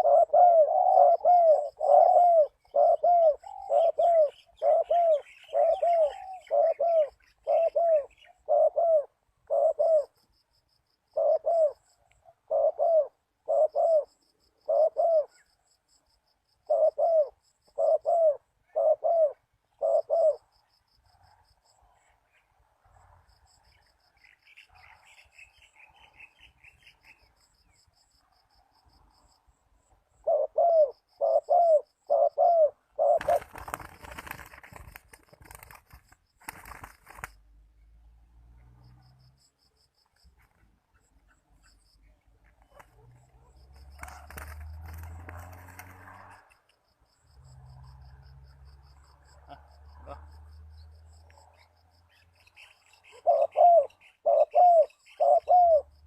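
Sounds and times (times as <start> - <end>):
dove cooing: 0.0 - 10.2, 11.1 - 15.4, 16.6 - 20.5, 30.2 - 35.7, 42.6 - 45.1, 53.0 - 56.0.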